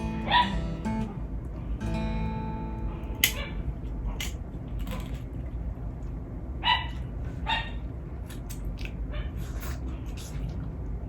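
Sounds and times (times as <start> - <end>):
dogs barking: 0.2 - 0.6, 3.2 - 3.6, 6.6 - 7.9.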